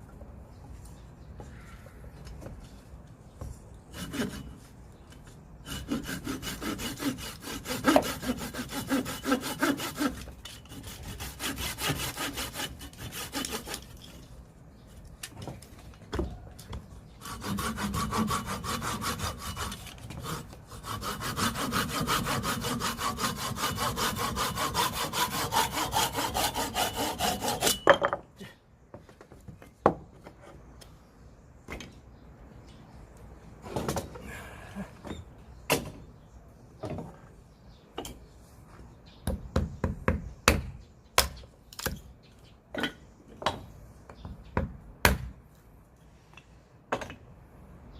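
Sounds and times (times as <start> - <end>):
hand saw cutting wood: 3.9 - 4.6, 5.6 - 14.0, 17.2 - 27.8.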